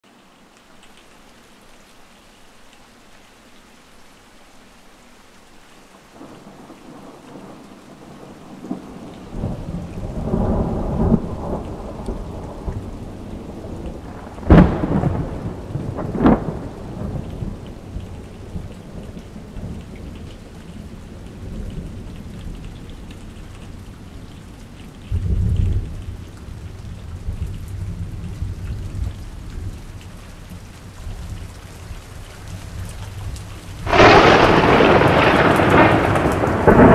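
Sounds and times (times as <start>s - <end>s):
steady rain: 0.0s - 36.9s
rolling thunder rumble: 6.2s - 36.9s
sharp thunder cracks: 8.6s - 12.7s, 13.7s - 17.6s, 33.8s - 36.9s.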